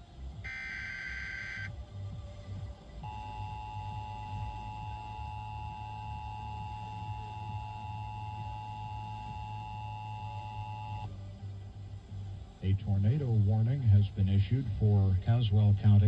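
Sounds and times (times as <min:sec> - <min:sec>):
low hum: 0:00.0 - 0:16.0
two-tone alert signal: 0:00.5 - 0:01.7.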